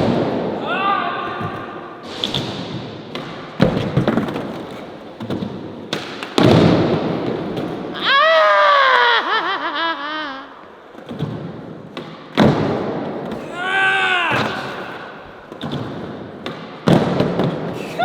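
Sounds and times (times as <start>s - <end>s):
person shouting: 0.6s - 1.5s, 13.4s - 15.2s
person yelling: 0.6s - 1.5s, 13.4s - 15.2s.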